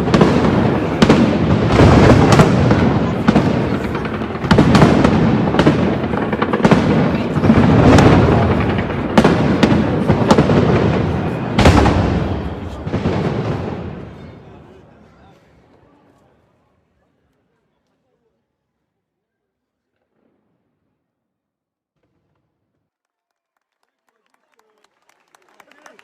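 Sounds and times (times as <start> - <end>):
rolling firework booms: 0.0 - 15.0
fireworks cracking: 0.0 - 15.9.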